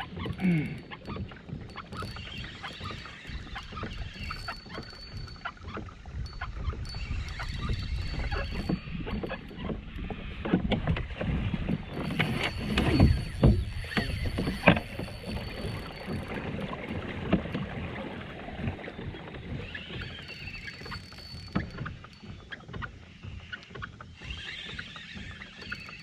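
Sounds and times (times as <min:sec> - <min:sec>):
knocks and clicks on kayak: 0:00.0 - 0:17.9
water against hull: 0:00.0 - 0:26.0.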